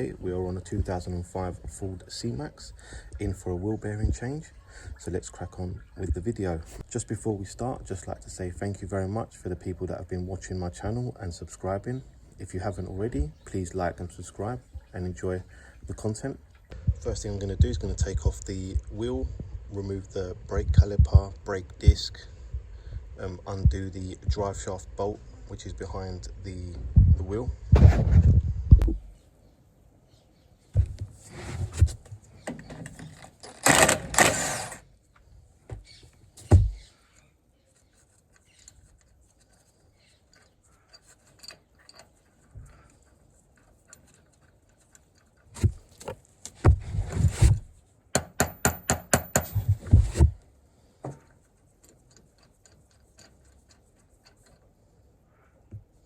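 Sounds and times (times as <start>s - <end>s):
tools and car parts clanking: 31.7s - 34.8s, 40.2s - 46.8s, 48.2s - 50.3s.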